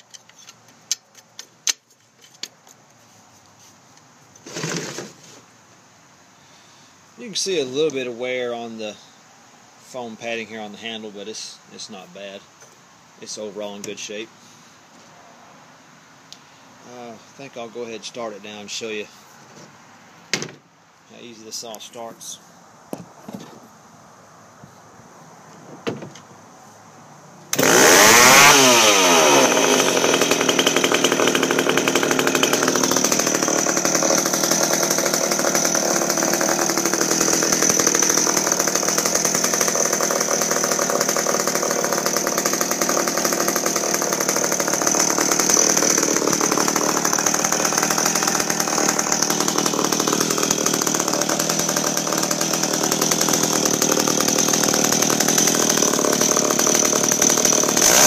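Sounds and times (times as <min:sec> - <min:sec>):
chainsaw engine starting and running: 0:04.4 - 0:05.2, 0:27.5 - 0:58.0.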